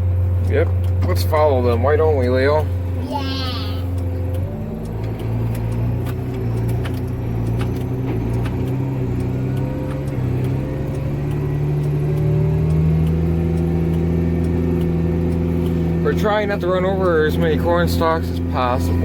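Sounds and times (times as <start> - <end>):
tractor engine running: 0.0 - 19.0.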